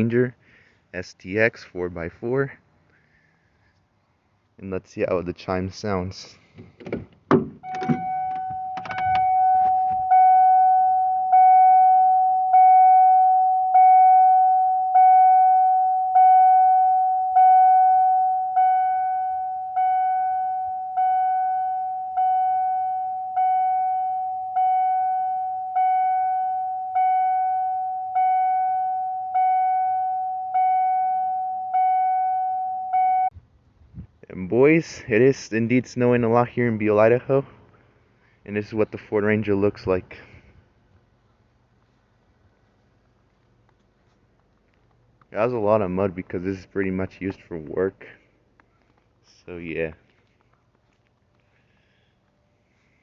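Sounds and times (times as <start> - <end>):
dashboard warning chime: 7.6 - 33.3.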